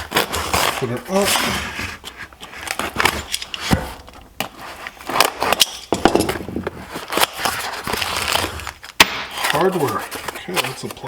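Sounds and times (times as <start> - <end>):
metal parts clinking and rattling: 5.6 - 6.5
cardboard box being opened: 6.3 - 11.0.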